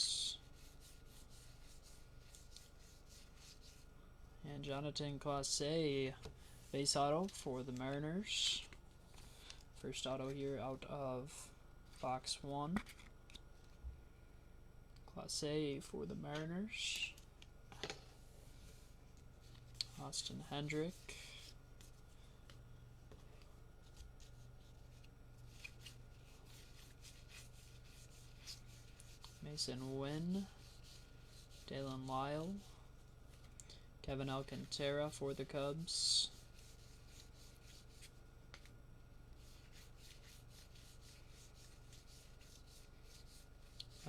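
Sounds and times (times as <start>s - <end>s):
low steady hum: 0.0s - 44.0s
cards rustling in hand: 12.8s - 13.5s
soft swipes of cards sliding: 23.2s - 33.5s.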